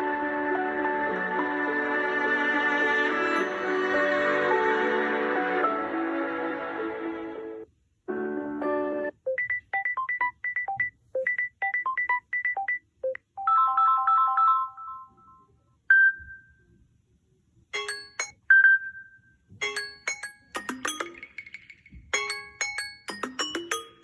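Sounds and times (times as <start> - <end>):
phone ringtones: 9.3 - 16.2.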